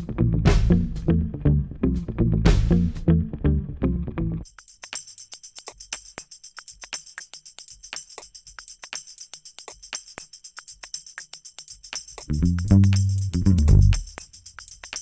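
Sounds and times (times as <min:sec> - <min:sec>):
percussion music with jingling: 0:04.4 - 0:15.0.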